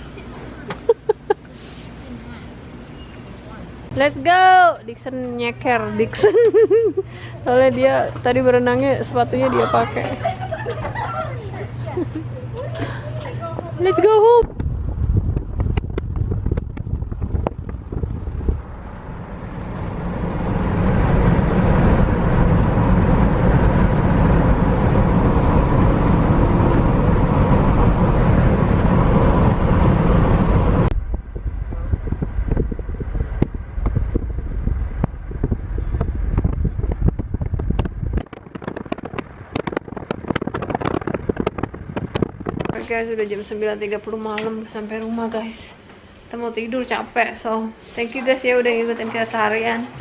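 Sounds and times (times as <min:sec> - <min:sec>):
car road and wind noise: 0:13.5 - 0:43.0.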